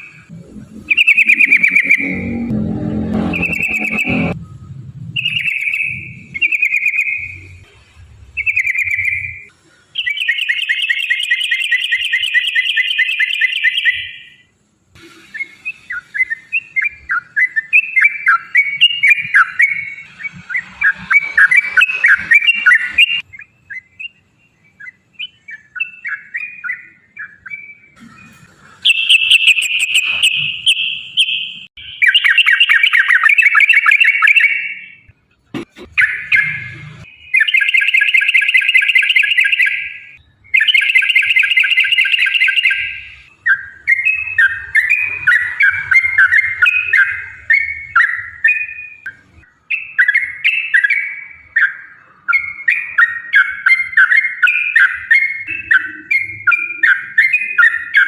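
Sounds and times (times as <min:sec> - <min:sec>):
bulbul singing trills: 0:00.0 - 0:04.4, 0:05.2 - 0:07.7, 0:08.3 - 0:14.5, 0:15.4 - 0:28.2, 0:28.8 - 0:35.1, 0:35.9 - 0:58.0.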